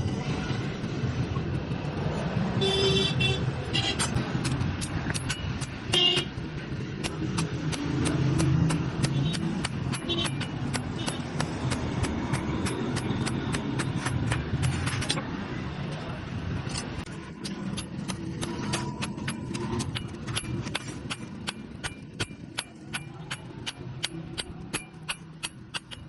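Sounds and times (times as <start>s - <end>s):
road traffic rumble: 0.0s - 26.0s
hammer tapping on metal: 4.0s - 6.4s, 7.0s - 15.2s, 17.4s - 26.0s.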